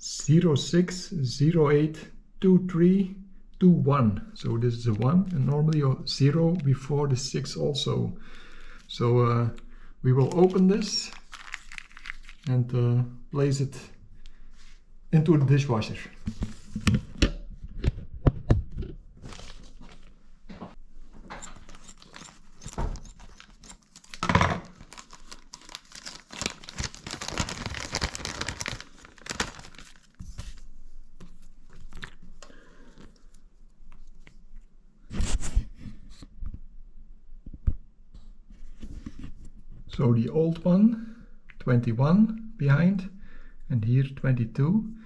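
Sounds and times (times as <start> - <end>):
packaging rustling and crinkling: 10.2 - 12.5, 19.2 - 20.2, 21.1 - 34.2.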